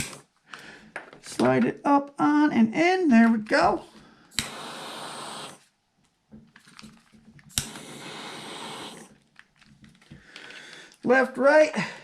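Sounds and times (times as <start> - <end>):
flame hissing: 0.0 - 0.3, 3.8 - 5.8, 7.5 - 9.2
torch lighter clicking: 4.3 - 5.6, 7.5 - 9.1.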